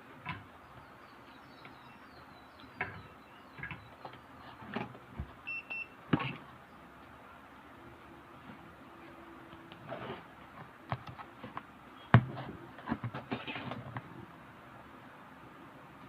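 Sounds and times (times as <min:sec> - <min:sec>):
short electronic beep: 0:05.5 - 0:06.0.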